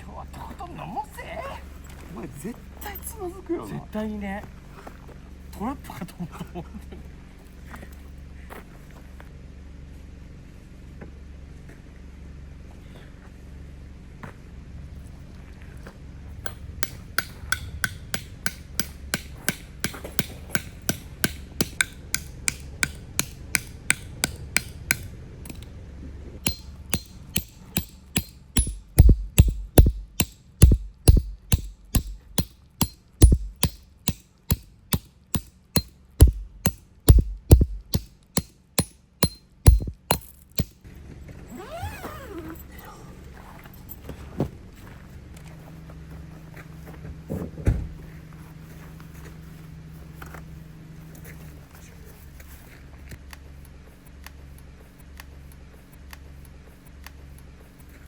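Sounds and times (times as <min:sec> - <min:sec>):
hammer striking tent peg: 0:16.5 - 0:25.6, 0:26.4 - 0:40.8.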